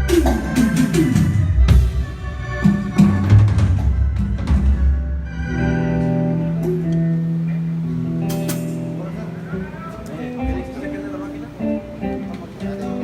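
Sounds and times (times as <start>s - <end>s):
drum hits and fills: 0.0s - 5.2s
sustained organ chord: 0.0s - 8.2s.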